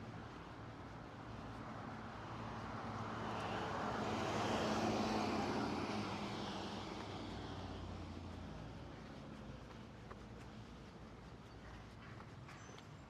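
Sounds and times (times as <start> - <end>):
passing vehicle engine: 0.9 - 10.9.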